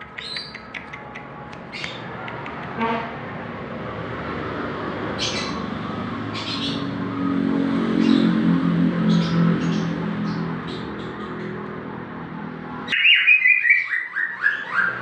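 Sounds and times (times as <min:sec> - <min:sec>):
bird sharp calls: 0:00.0 - 0:02.8
vehicle engine hum: 0:00.0 - 0:13.0.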